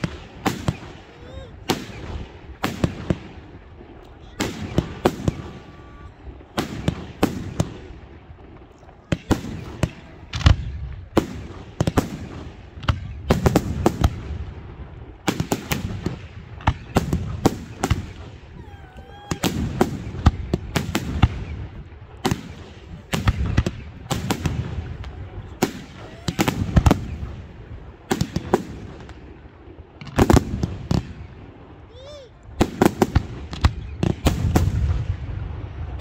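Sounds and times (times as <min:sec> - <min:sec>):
faint firework whistles: 0:00.0 - 0:02.9, 0:04.3 - 0:07.7
fireworks bangs: 0:00.0 - 0:31.6, 0:32.6 - 0:36.0.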